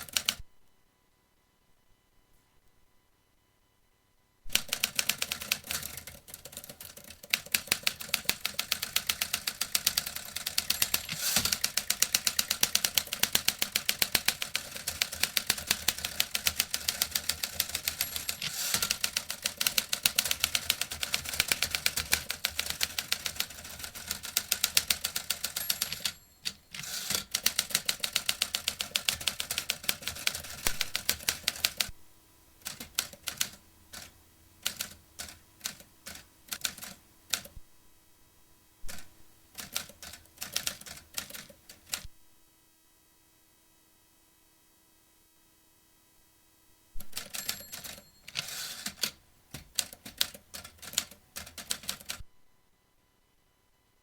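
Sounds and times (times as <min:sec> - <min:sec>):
typewriter key strikes: 0:07.5 - 0:31.8, 0:47.0 - 0:52.2.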